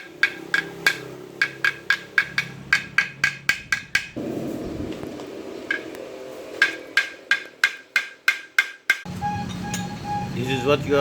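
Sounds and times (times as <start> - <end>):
hammer tapping on metal: 0.0 - 4.2, 5.7 - 10.0
rough rushing noise: 0.4 - 7.8.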